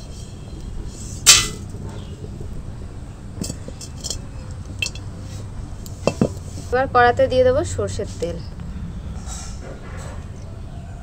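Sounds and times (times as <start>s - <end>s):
metal cookware clinking: 3.4s - 5.1s.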